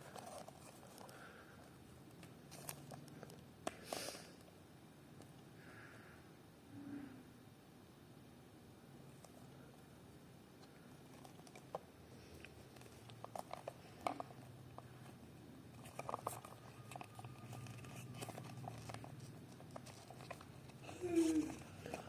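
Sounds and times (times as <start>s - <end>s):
packaging clicks and crinkles: 0.0s - 3.8s, 11.1s - 22.0s.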